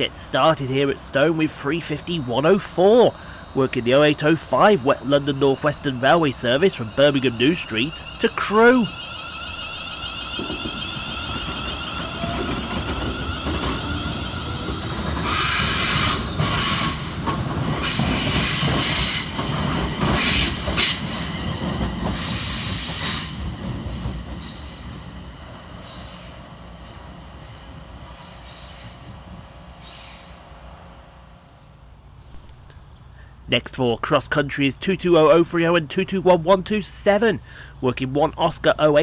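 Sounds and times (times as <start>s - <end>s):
train rumble and whining: 0.0s - 39.0s
wheel squeal with clattering: 5.0s - 25.0s.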